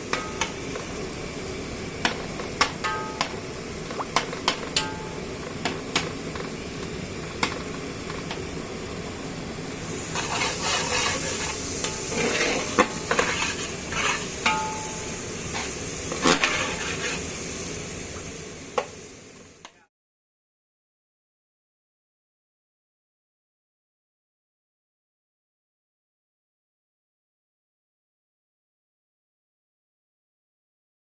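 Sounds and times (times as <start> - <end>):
steady background hum: 0.0 - 19.8.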